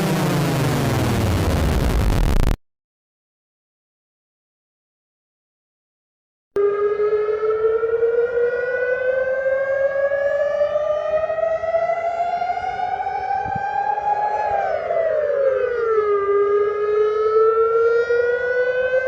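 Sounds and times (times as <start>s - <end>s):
reversed siren wail rising: 6.6s - 19.0s.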